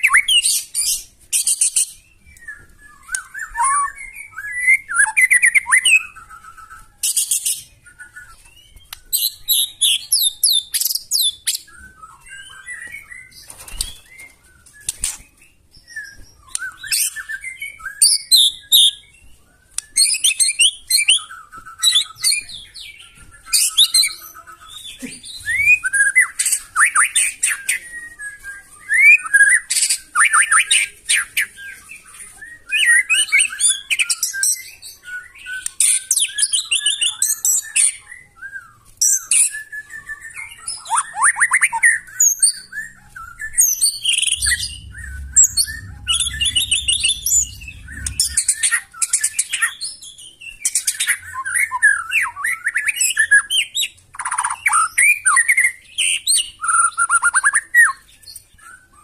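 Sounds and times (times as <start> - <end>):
bird singing whistles and trills: 0.0 - 59.0
faint low rumble: 43.0 - 49.0.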